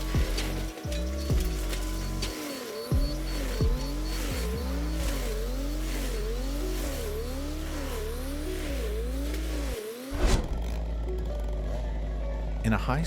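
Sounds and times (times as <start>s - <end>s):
held bass notes: 0.0s - 9.8s
swooping synth figure: 0.0s - 12.6s.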